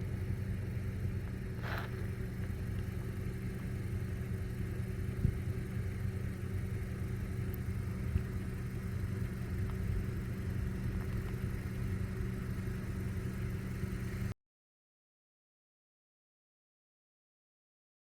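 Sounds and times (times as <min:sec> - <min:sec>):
car engine humming: 0:00.0 - 0:14.3.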